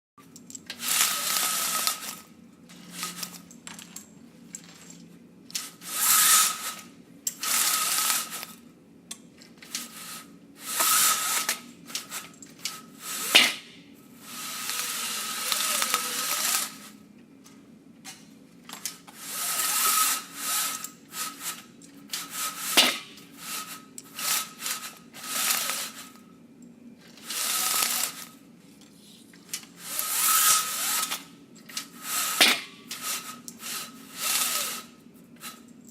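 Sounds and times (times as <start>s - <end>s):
metal blinds rattling: 18.6s - 26.1s.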